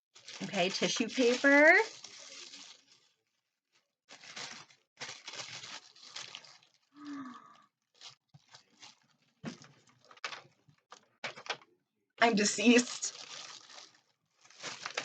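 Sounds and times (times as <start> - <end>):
tissue paper crinkling and tearing: 0.2 - 3.4, 4.1 - 7.3, 7.9 - 10.3, 12.6 - 15.0.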